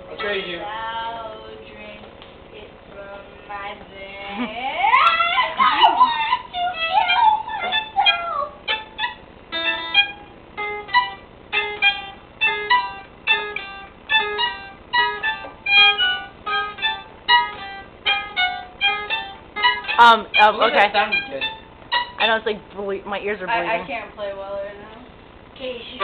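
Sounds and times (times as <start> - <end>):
violin played unskillfully: 0.1 - 1.0, 5.0 - 22.5.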